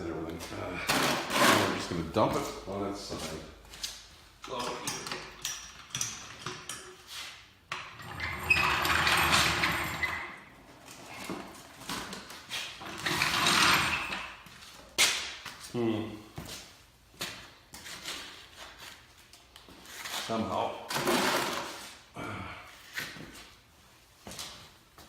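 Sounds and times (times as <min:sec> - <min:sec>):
lawn mower scraping and rattling: 0:08.0 - 0:10.3, 0:12.8 - 0:14.3, 0:20.9 - 0:21.8.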